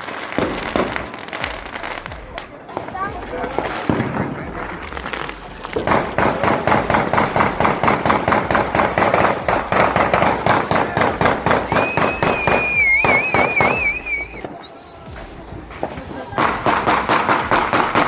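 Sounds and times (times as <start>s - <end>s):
firecrackers popping: 0.0s - 18.0s
high wavering whistle: 11.7s - 15.4s.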